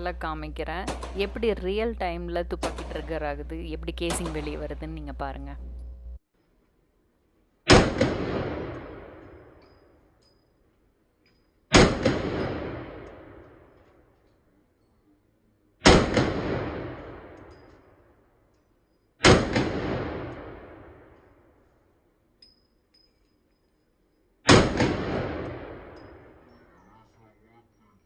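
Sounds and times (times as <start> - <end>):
slowed-down pistol shots: 0.0 - 6.2, 7.7 - 9.8, 11.7 - 14.2, 15.8 - 18.0, 19.2 - 21.6, 24.5 - 26.5.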